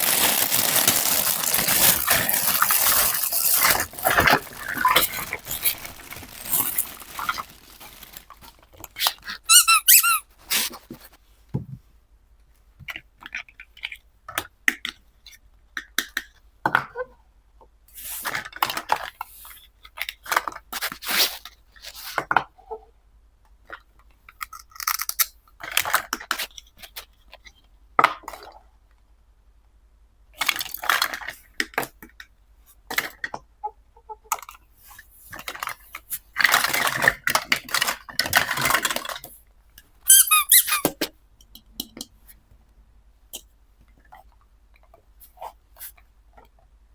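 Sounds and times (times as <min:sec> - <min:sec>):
squeaky plastic rubbing: 0:00.0 - 0:10.8, 0:40.1 - 0:41.0.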